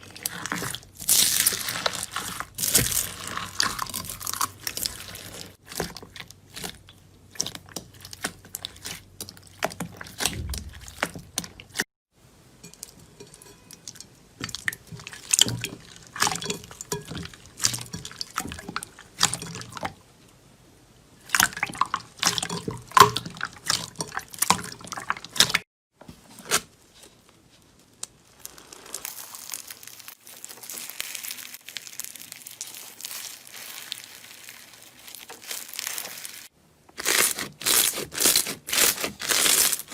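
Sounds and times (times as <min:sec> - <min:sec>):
slime squishing: 0:00.0 - 0:11.8, 0:26.4 - 0:39.9.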